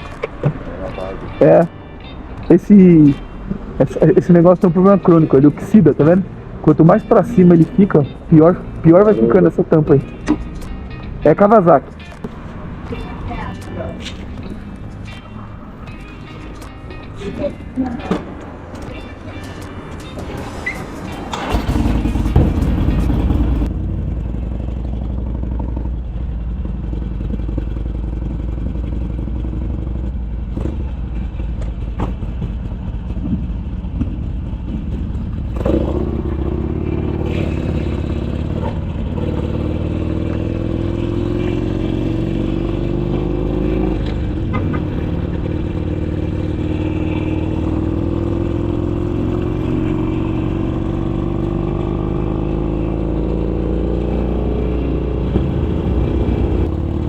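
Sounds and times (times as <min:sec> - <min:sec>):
motorcycle engine rumbling and accelerating: 0:00.0 - 0:57.0.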